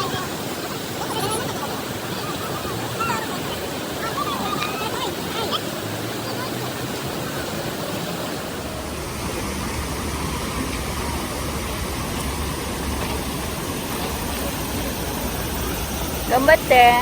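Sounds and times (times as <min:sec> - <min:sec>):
river rushing: 0:00.0 - 0:17.0
low rumble: 0:08.4 - 0:16.7.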